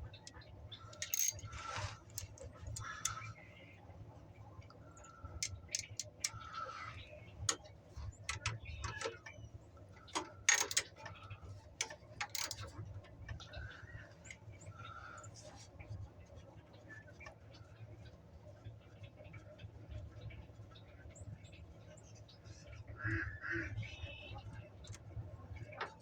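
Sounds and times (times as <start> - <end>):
hand tools clinking on metal: 0.9 - 2.4, 10.5 - 10.9, 12.2 - 12.6.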